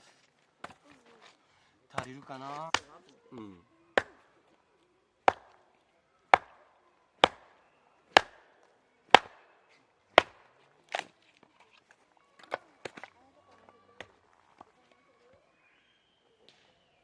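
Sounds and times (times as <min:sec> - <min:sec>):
axe striking firewood: 0:00.6 - 0:00.8, 0:02.0 - 0:02.9, 0:04.0 - 0:04.4, 0:05.2 - 0:05.7, 0:06.3 - 0:11.2.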